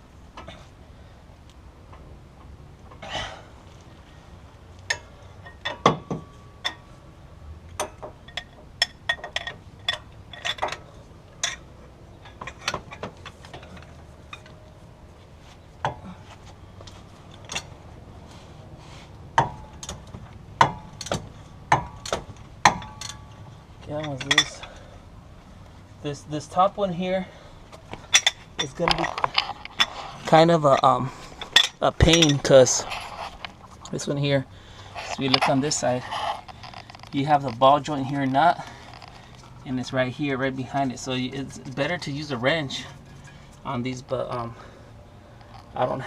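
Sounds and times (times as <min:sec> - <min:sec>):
metal tools clinking on steel: 0:04.8 - 0:07.0, 0:07.7 - 0:14.8, 0:16.8 - 0:17.8, 0:19.4 - 0:25.0, 0:26.1 - 0:44.8.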